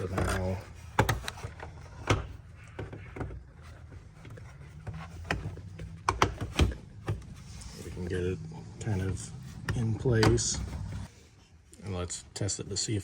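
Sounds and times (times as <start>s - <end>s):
plastic parts clicking and knocking: 0.0s - 7.4s
low steady hum: 0.0s - 13.0s.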